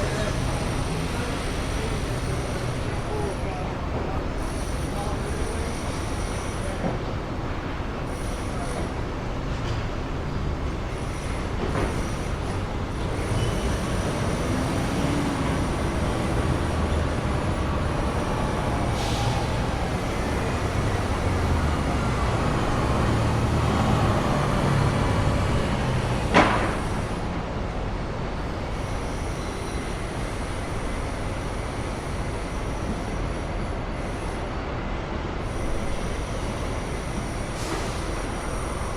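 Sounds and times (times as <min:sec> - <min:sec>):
low rumble of traffic: 0:00.0 - 0:38.9
faint high squeals: 0:10.9 - 0:22.1.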